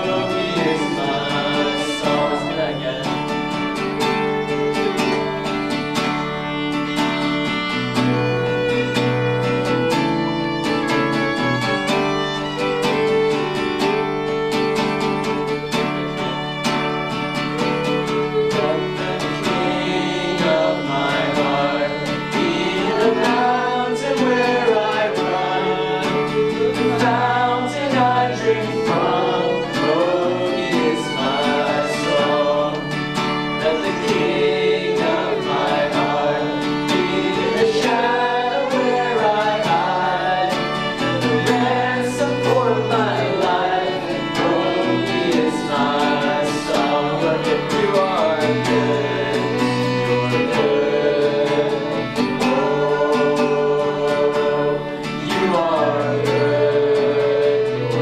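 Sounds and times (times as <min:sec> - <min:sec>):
guitar and fiddle music: 0:00.0 - 0:58.0
person singing: 0:00.0 - 0:58.0.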